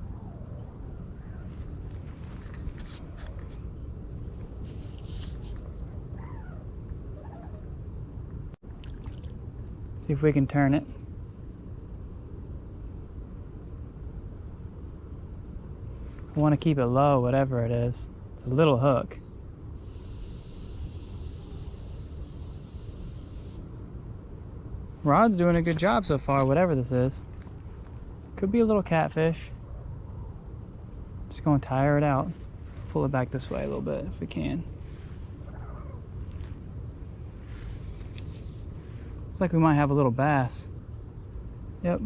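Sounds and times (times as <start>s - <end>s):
faint bird calls: 0.0s - 1.9s, 6.1s - 7.7s, 34.9s - 36.5s
crickets droning: 0.0s - 42.0s
brief rustles: 1.4s - 3.6s, 25.5s - 26.5s
hiss: 19.8s - 23.7s.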